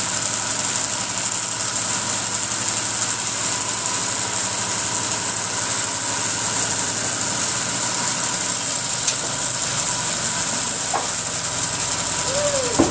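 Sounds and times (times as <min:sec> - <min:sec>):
bandsaw running with whine: 0:00.0 - 0:12.9.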